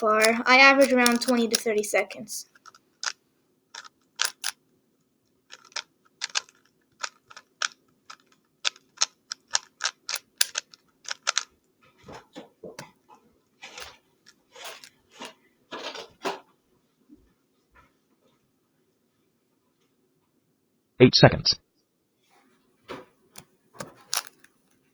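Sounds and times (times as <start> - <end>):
puzzle cube layers clicking: 0.0 - 1.9, 3.8 - 4.5, 5.5 - 11.5, 14.6 - 14.9, 23.8 - 24.5
dull knocks of cube handled: 3.8 - 4.5, 5.5 - 11.4.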